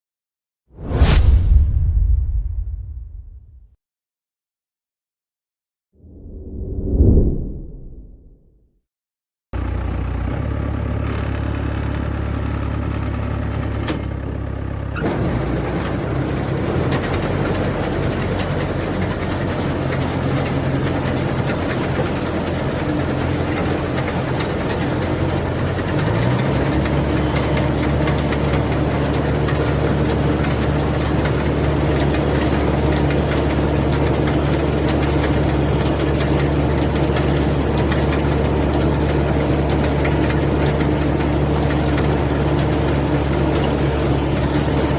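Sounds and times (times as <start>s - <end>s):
harvester engine running: 9.6s - 44.9s.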